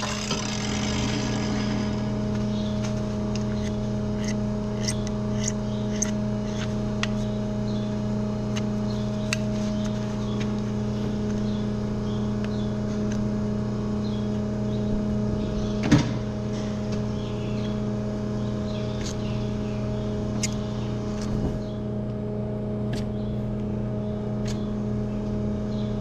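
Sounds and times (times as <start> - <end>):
low machine hum: 0.0 - 26.0
hoof knife carving hoof: 3.4 - 6.7.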